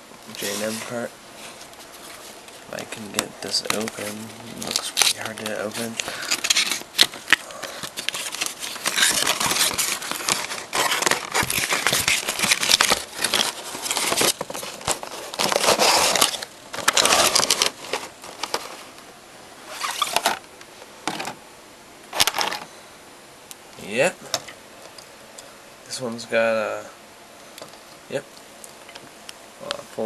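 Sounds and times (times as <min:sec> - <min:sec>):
packaging crinkling and tearing: 0:01.6 - 0:19.0, 0:19.7 - 0:20.4, 0:22.1 - 0:22.6.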